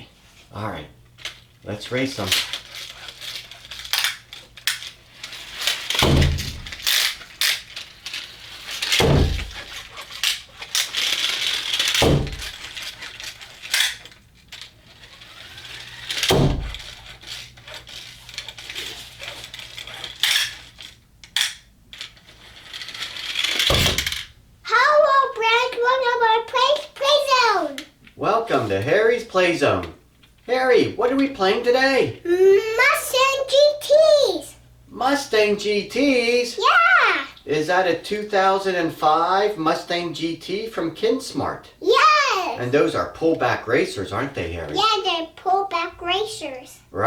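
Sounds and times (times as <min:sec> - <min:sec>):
toy car whir: 0:02.1 - 0:27.9, 0:31.6 - 0:34.4, 0:41.8 - 0:43.3
toy cars clicking and clattering: 0:02.1 - 0:27.9.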